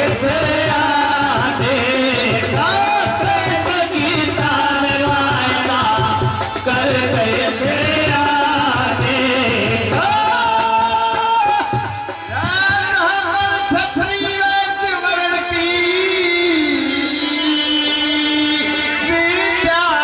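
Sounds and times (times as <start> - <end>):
steady drum beat: 0.0 - 15.5
elderly man singing: 0.0 - 20.0
instrumental accompaniment: 0.0 - 20.0.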